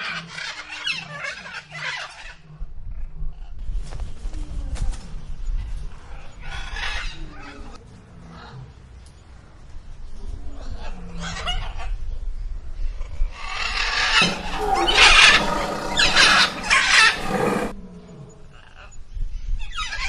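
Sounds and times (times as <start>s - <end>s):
animal screeching call: 13.8s - 17.8s.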